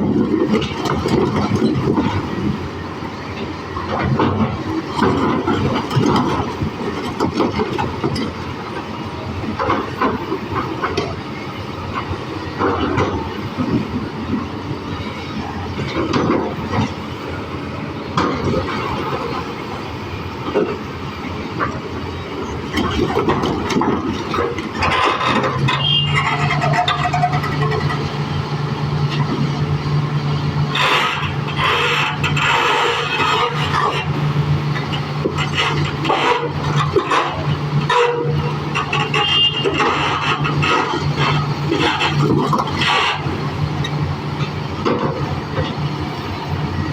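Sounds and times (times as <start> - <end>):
excavator diesel engine running: 0.0 - 46.9
metal knocks and clanks: 22.7 - 28.2.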